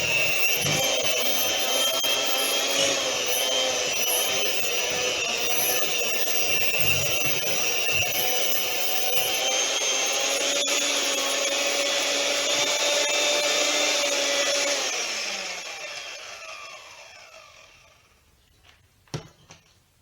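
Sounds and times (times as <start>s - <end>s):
electric hand mixer whining: 0.0s - 18.2s.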